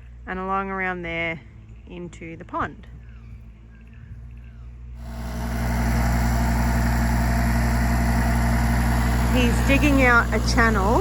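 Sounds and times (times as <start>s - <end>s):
heavy diesel engine running: 5.0s - 11.0s.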